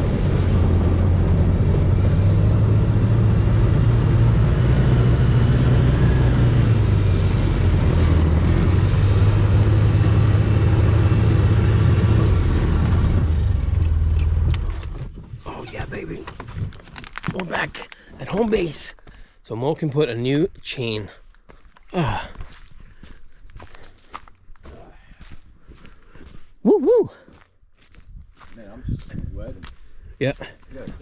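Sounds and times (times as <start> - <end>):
quad bike engine running: 0.0 - 14.8.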